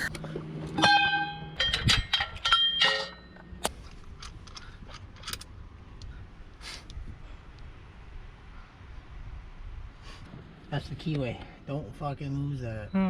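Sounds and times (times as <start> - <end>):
metal tools clanking: 0.0 - 5.5.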